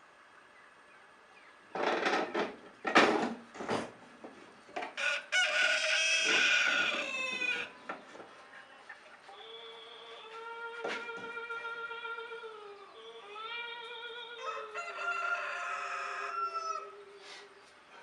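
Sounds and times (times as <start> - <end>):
rooster crowing: 5.0 - 7.8, 9.3 - 17.2.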